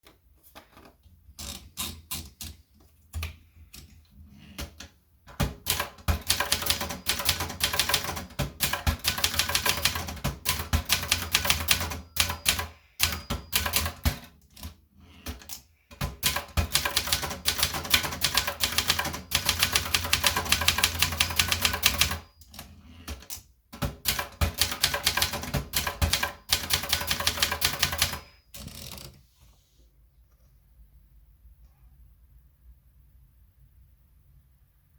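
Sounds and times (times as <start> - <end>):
typewriter typing: 4.6 - 29.1.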